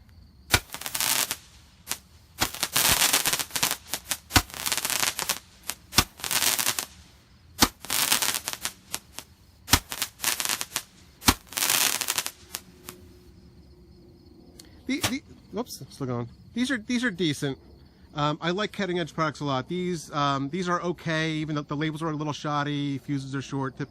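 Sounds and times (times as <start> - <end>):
firework crackling: 0.5 - 13.2, 14.9 - 15.2
roman candle pops: 1.9 - 6.8, 7.6 - 13.0.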